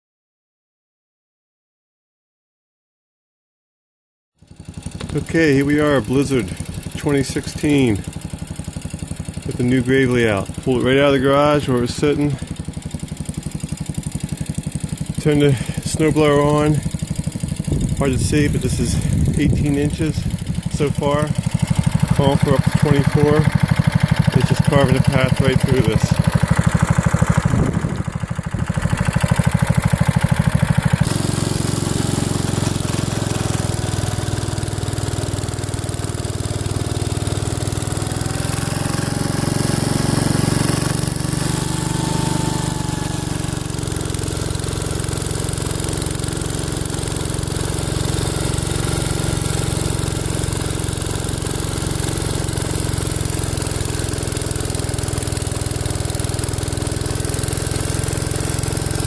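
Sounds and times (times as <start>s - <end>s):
snow blower engine running: 4.4s - 59.0s.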